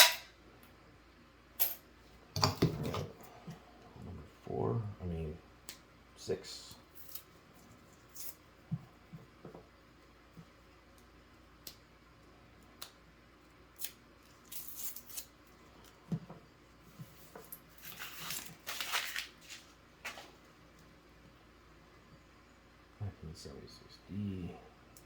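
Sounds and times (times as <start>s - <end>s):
paper wrapper tearing and crinkling: 17.8s - 19.8s.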